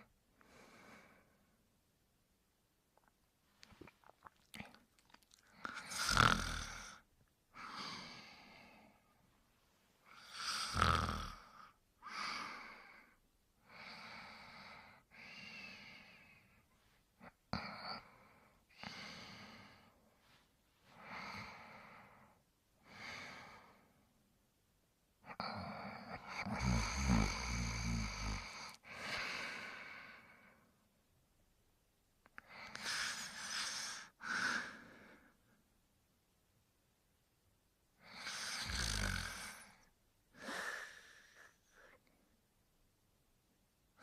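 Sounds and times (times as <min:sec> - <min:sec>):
person snoring: 0:05.5 - 0:07.0, 0:10.1 - 0:12.8, 0:25.3 - 0:29.8, 0:38.0 - 0:41.9.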